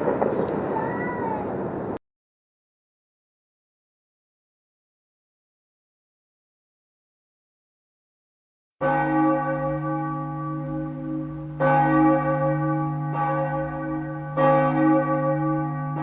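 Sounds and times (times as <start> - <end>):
large bell tolling: 8.8 - 16.0.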